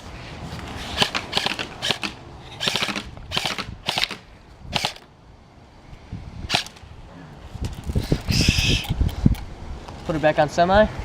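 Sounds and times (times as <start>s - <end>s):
bb gun firing bursts: 1.0s - 5.0s, 6.5s - 6.8s.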